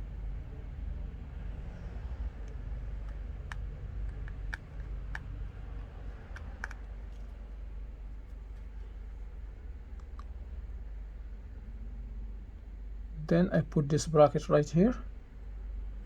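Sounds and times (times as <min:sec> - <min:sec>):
low steady hum: 0:00.0 - 0:16.0
tweezers clicking on tiny screws: 0:02.5 - 0:06.9.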